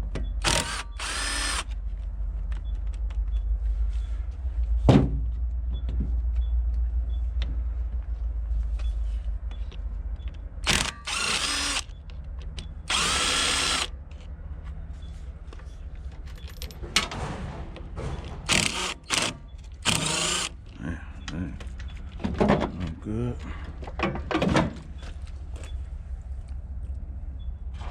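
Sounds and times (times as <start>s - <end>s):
power drill motor whine: 0.4s - 1.8s, 10.6s - 12.0s, 12.9s - 13.9s, 18.5s - 20.5s.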